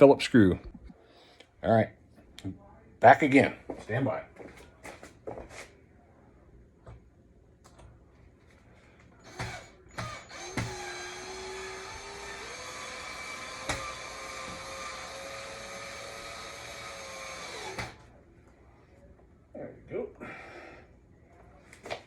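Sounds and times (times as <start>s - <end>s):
power drill motor running: 9.2s - 18.0s
drill bit knocking on screw: 9.3s - 17.9s.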